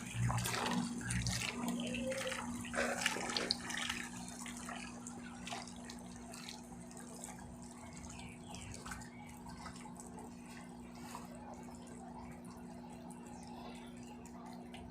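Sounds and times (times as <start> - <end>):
water splashing into drum: 0.0 - 7.8
washing machine low hum: 0.0 - 14.9.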